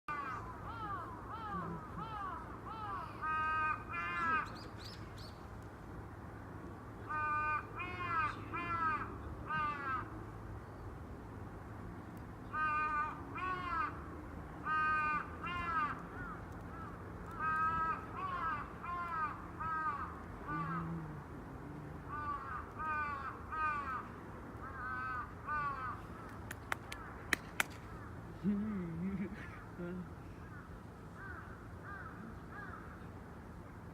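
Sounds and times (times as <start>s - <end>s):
crow cawing: 0.1s - 4.6s, 7.1s - 10.1s, 12.5s - 14.0s, 14.6s - 20.8s, 22.1s - 26.4s, 30.4s - 33.1s
high chirps of small birds: 4.1s - 5.6s
sharp clicks: 26.2s - 27.9s.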